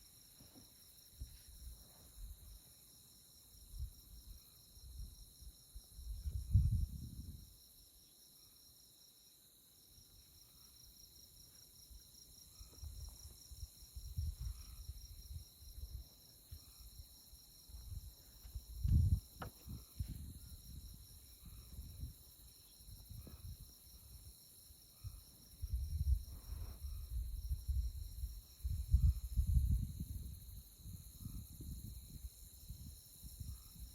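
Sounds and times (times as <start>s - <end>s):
insects trilling: 0.0s - 33.9s
low rumble in gusts: 6.0s - 7.5s.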